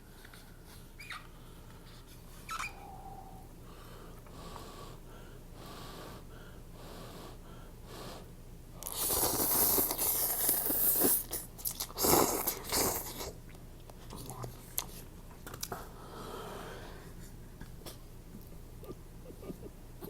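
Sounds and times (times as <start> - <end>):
soft breaths close to microphone: 0.0 - 11.3, 15.8 - 17.8
loud slurp of noodles: 8.8 - 13.3.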